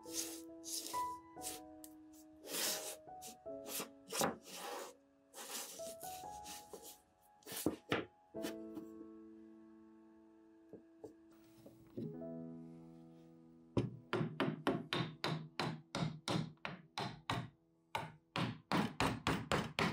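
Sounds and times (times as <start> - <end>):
background music with held notes: 0.0 - 14.2.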